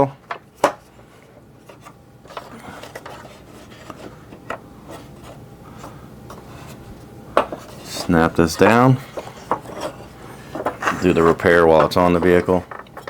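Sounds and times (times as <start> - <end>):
plastic parts rubbing and scraping: 1.2 - 5.4, 9.0 - 13.0.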